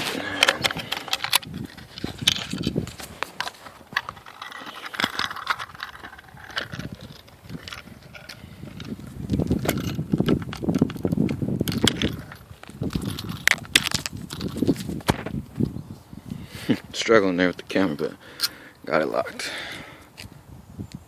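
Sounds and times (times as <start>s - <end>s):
camera mount clicks and scrapes: 0.0s - 15.3s.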